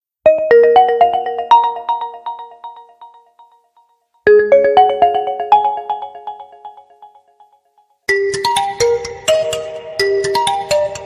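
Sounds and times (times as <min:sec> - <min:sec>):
phone ringtone melody: 0:00.3 - 0:07.5.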